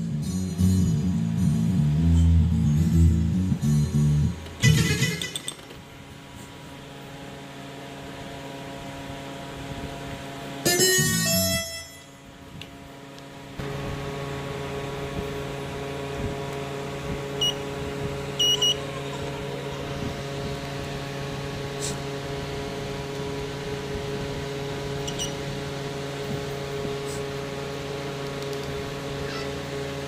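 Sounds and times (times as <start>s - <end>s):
electrical hum: 0.0s - 30.0s
short high beeps: 18.4s - 18.8s, 25.1s - 25.4s.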